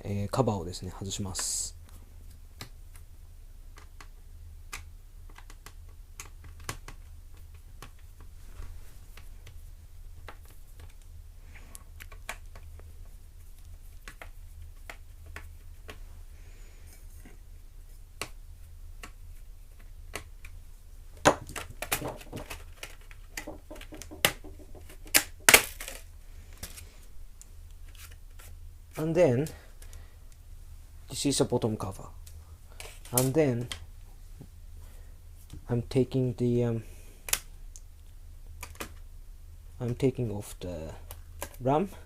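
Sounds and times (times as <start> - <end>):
plastic clicks and knocks: 21.2 - 26.0.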